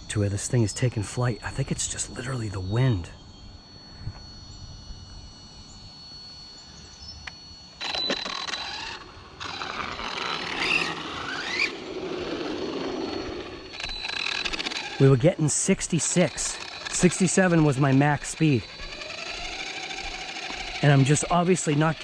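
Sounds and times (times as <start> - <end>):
toy truck electric motor whining: 7.8 - 22.0.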